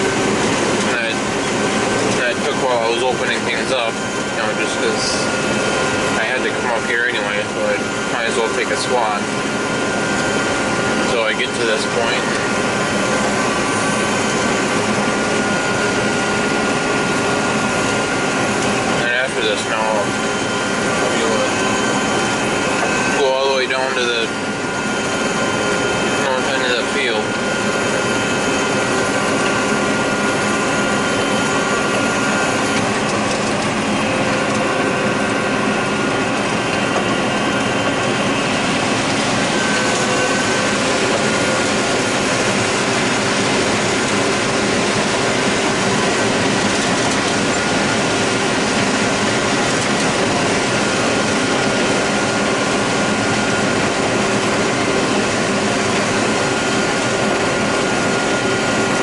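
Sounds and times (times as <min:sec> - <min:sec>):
combine harvester engine drone: 0:00.0 - 0:59.0.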